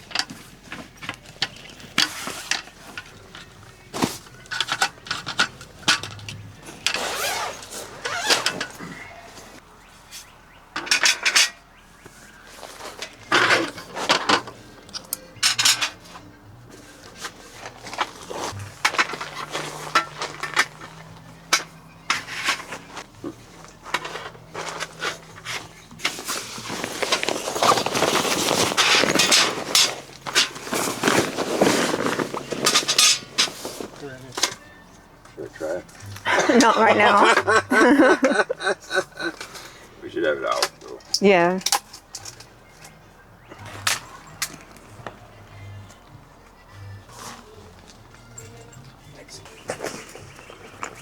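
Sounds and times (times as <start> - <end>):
rustling: 0.0 - 10.4, 11.0 - 51.0
gear clinking and clattering: 17.2 - 34.6.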